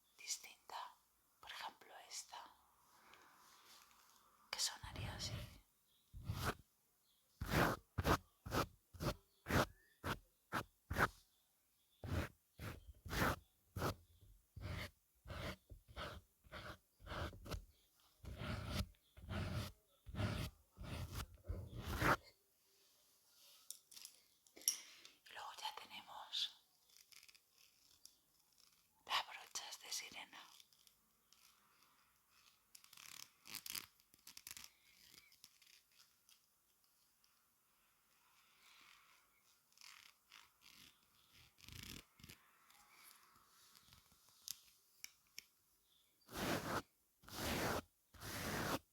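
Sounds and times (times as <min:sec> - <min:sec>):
makeup brushes swishing on microphone: 0:06.2 - 0:06.6, 0:07.4 - 0:11.1, 0:12.0 - 0:14.0, 0:18.3 - 0:22.2, 0:46.3 - 0:48.9
makeup brushes swishing: 0:46.3 - 0:48.8.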